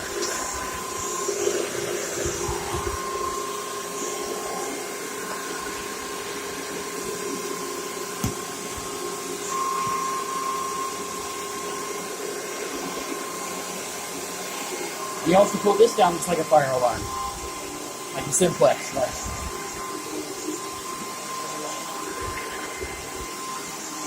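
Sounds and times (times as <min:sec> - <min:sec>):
vacuum cleaner running: 0:00.0 - 0:24.0
knock: 0:08.2 - 0:08.4.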